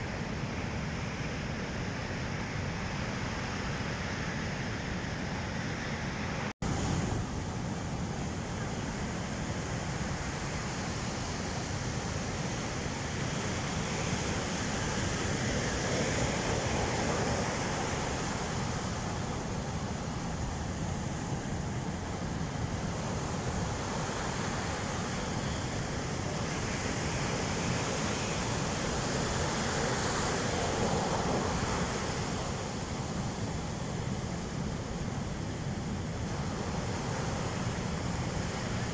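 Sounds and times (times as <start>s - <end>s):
surf breaking on beach: 12.6s - 38.9s.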